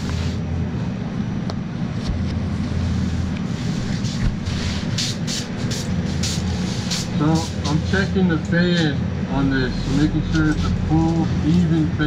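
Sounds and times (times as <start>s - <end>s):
paint sprayer droning: 3.6s - 8.1s
spray gun hissing bursts: 4.0s - 8.0s.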